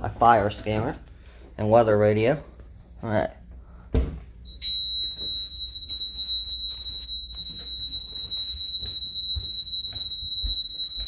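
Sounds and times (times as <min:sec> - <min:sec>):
high-pitched alarm tone: 0:04.5 - 0:11.0.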